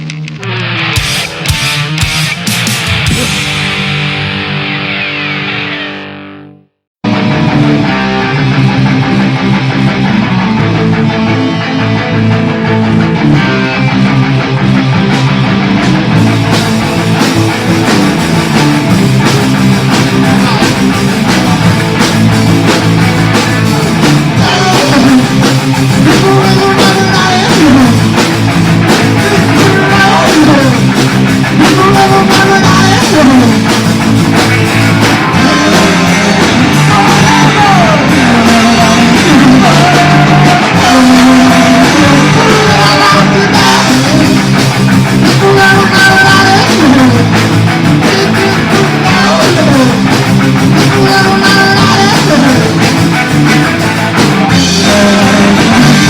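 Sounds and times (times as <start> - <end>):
drum kit playing: 0.0 - 6.1, 7.0 - 56.0
electric guitar: 0.0 - 56.0
person singing: 24.2 - 28.2, 29.0 - 33.7, 35.2 - 44.6, 45.2 - 52.8, 54.5 - 56.0.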